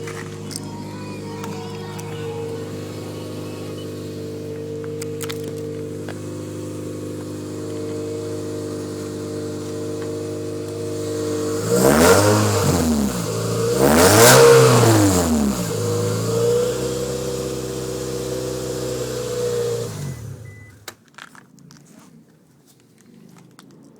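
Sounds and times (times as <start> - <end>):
clicks: 0.0 - 6.2
car engine idling and revving: 0.0 - 21.0.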